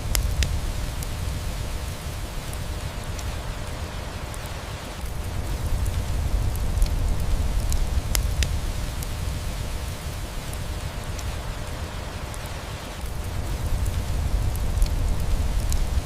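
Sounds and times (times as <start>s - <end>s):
steady rain: 0.0s - 16.0s
wood fire crackling: 0.0s - 16.0s.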